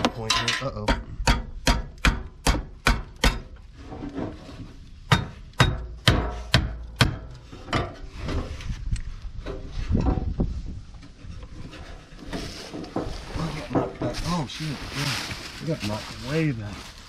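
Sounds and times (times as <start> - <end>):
hammer tapping on metal: 0.3 - 3.5.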